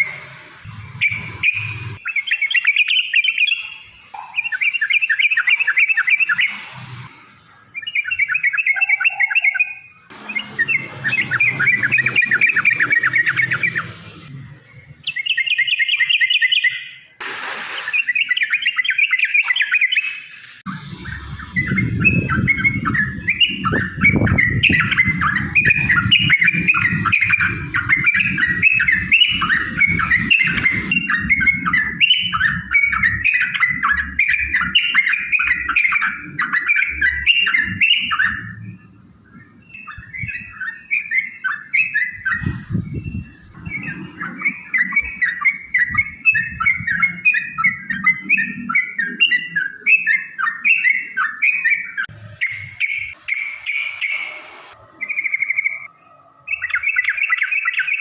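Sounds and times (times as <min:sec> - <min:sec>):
bird warbling song: 0:00.0 - 0:58.0
low rumble: 0:20.7 - 0:34.2.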